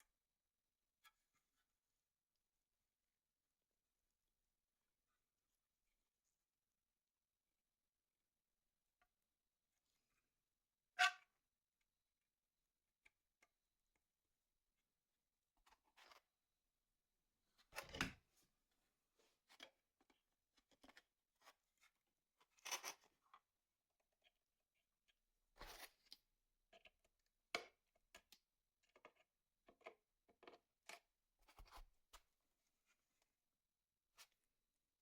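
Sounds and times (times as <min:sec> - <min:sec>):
handling small parts and tools: 0:19.4 - 0:24.4.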